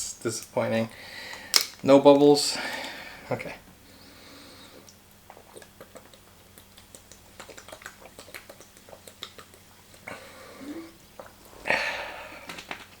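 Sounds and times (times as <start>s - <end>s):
wet swallowing clicks: 4.8s - 11.6s.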